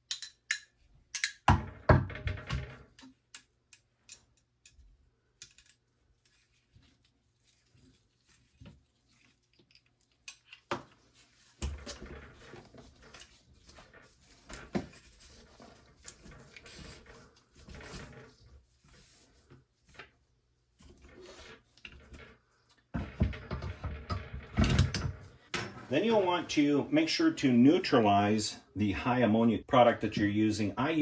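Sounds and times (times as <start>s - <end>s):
metal parts clicking and knocking: 0.0s - 1.5s
rubbing and scraping: 23.0s - 27.8s.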